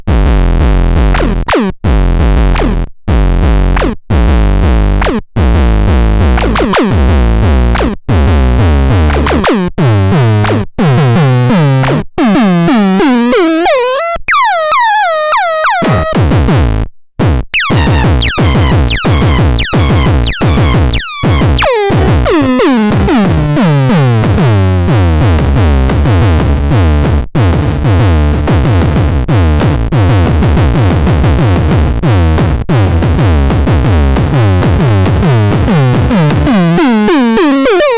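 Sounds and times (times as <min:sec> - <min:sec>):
heavy synth bass: 0:00.0 - 0:13.7, 0:15.4 - 0:37.9
synthesizer tones sweeping: 0:17.6 - 0:23.9.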